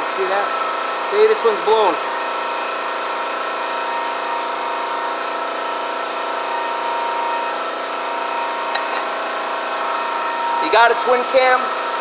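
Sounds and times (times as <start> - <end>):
machine drone with whine: 0.0 - 12.0.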